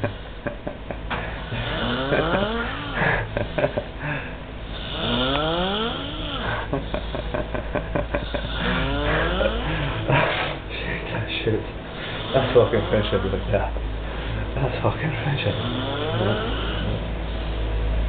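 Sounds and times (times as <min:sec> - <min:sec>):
man snoring loudly: 0:01.4 - 0:10.6, 0:11.9 - 0:13.4, 0:15.3 - 0:17.0.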